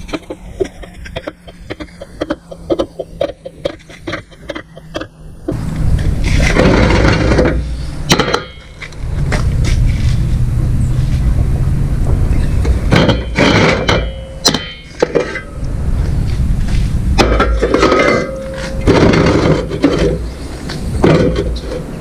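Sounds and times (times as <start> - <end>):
metal parts clanking and scraping: 0.0 - 5.2, 5.9 - 10.4, 12.3 - 22.0
sharp metallic knocks: 0.0 - 5.6, 6.4 - 9.0, 11.3 - 15.6.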